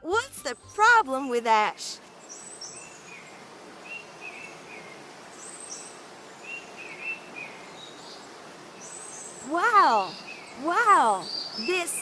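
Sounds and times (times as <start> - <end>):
small birds chirping: 0.6 - 12.0
steady hiss: 2.0 - 9.5.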